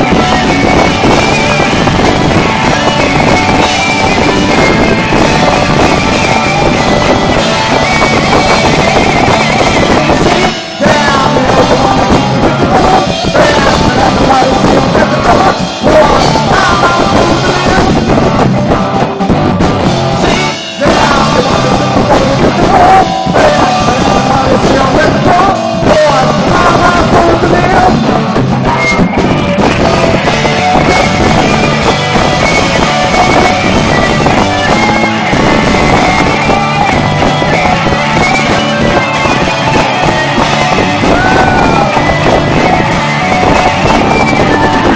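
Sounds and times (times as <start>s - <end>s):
live rock band playing: 0.0s - 44.9s.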